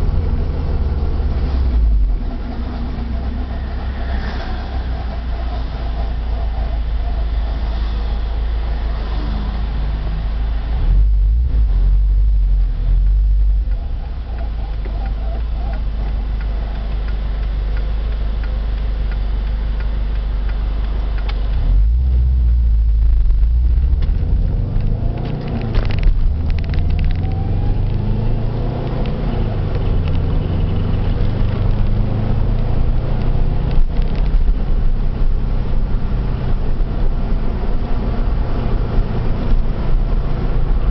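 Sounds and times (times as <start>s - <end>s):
car road and drivetrain rumble: 0.0s - 40.9s
faint wheel bearing noise: 1.0s - 10.8s, 12.6s - 28.1s.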